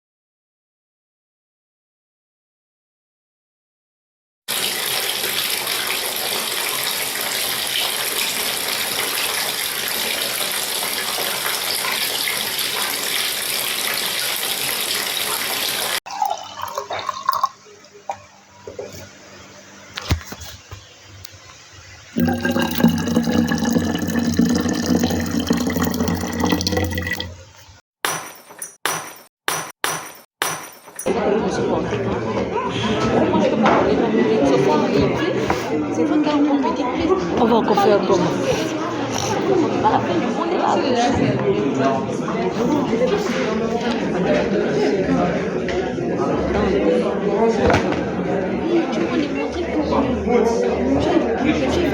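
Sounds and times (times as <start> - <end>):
water trickling: 16.0 - 17.6, 22.2 - 27.6
running water rushing: 22.2 - 27.5.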